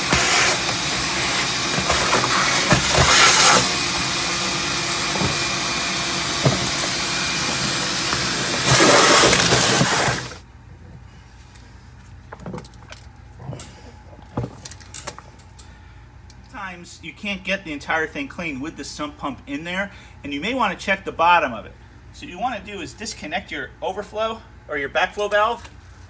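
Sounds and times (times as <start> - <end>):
shop vacuum running: 0.0 - 10.4
water gurgling in suction: 0.0 - 10.4.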